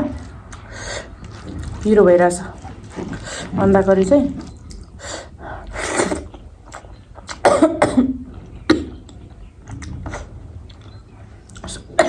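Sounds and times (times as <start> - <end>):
woman coughing: 7.4 - 9.0.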